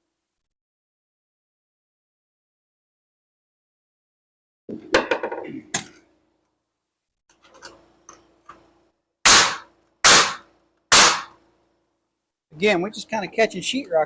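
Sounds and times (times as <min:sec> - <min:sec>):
nails hammered into wood: 0:09.3 - 0:11.4.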